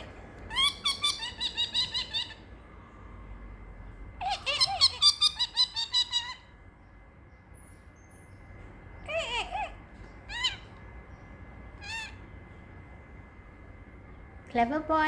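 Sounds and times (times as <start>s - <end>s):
parrotlet squeaky chirps: 0.0s - 2.5s, 4.2s - 6.6s, 9.0s - 12.3s.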